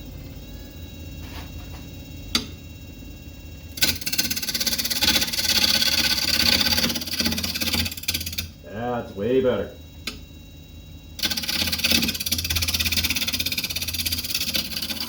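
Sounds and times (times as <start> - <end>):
lathe motor hum: 3.7 - 10.2, 11.2 - 15.0
turning tool cutting wood: 3.8 - 8.6, 11.2 - 15.0.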